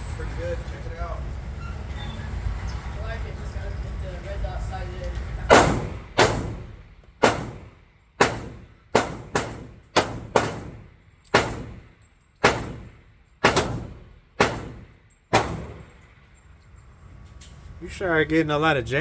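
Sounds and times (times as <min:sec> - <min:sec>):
pistol shots with ringing tail: 0:05.5 - 0:16.3.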